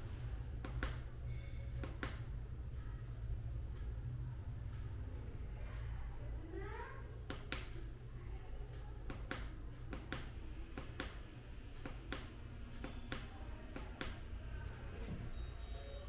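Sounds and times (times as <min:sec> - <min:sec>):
steady low hum: 0:00.0 - 0:16.0
sharp clicks and taps: 0:00.6 - 0:01.1, 0:01.8 - 0:02.2, 0:07.2 - 0:07.8, 0:08.7 - 0:14.2.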